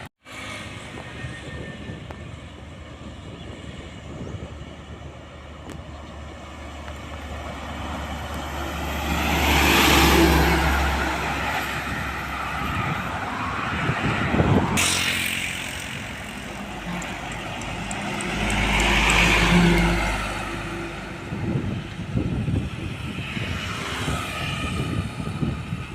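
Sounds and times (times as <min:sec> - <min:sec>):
heavy road traffic passing: 0:00.0 - 0:25.9.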